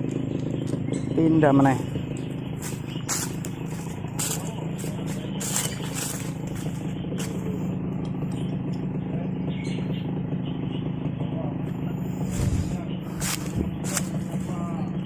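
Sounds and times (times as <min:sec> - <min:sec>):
vehicle engine droning: 0:00.0 - 0:15.0.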